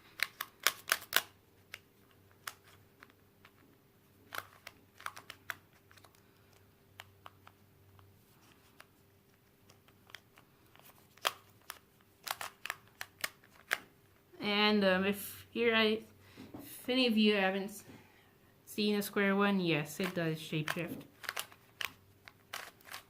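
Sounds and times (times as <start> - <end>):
plastic puzzle layers clicking: 0.0 - 3.6, 4.2 - 7.6, 9.6 - 13.9, 20.0 - 23.0.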